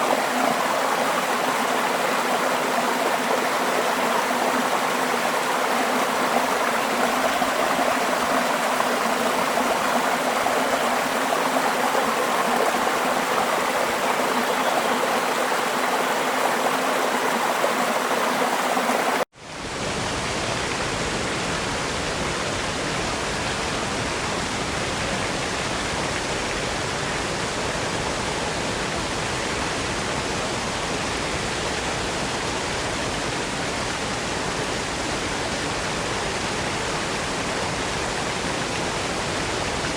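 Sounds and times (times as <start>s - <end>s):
waterfall rushing: 0.0s - 19.3s
flowing stream: 0.0s - 39.9s.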